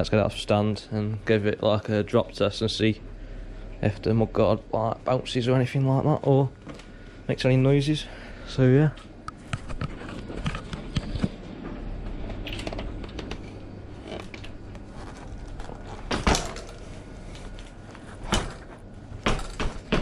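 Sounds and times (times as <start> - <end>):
bicycle clicks and rattles: 12.1 - 18.7.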